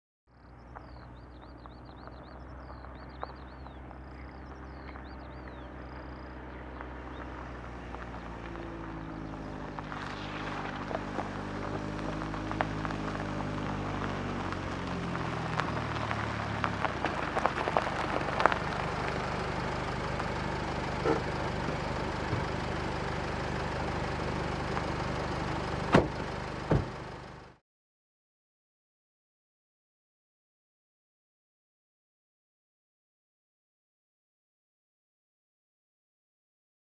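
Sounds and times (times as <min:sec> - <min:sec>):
car engine slowing: 0:00.3 - 0:27.6
tyres crunching over gravel: 0:00.4 - 0:27.4.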